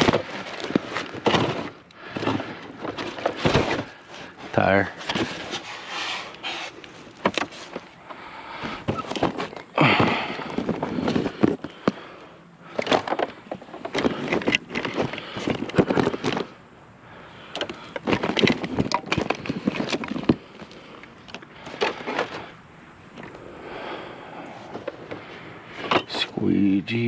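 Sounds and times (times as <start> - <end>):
junk clattering and knocking: 0.0 - 5.6, 8.6 - 12.1, 12.7 - 16.5, 17.5 - 22.5.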